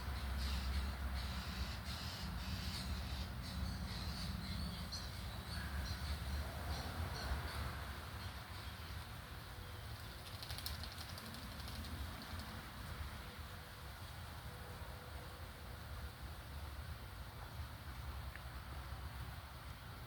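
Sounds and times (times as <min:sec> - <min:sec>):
wild birds chirping: 0:00.0 - 0:12.6.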